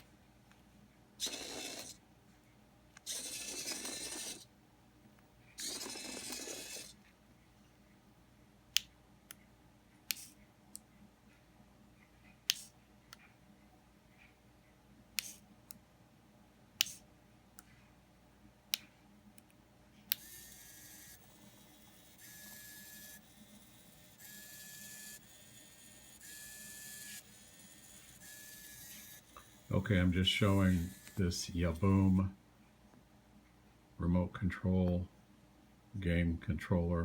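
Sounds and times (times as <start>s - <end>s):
small servo motors whirring: 1.2s - 2.0s, 3.0s - 4.5s, 5.6s - 7.0s, 20.1s - 32.2s.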